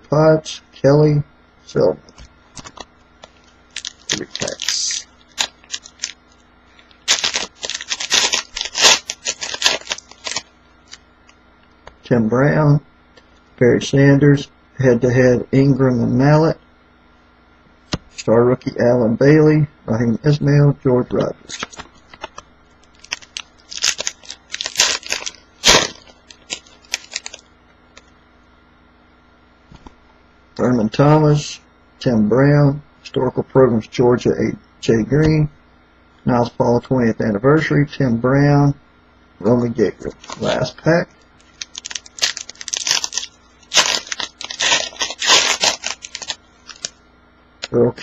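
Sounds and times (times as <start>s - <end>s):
cards clicking and rustling: 2.5s - 11.0s, 21.5s - 27.4s, 41.4s - 47.0s
wrapper tearing and crinkling: 3.2s - 11.0s, 21.5s - 27.5s, 40.2s - 40.7s, 41.4s - 47.0s.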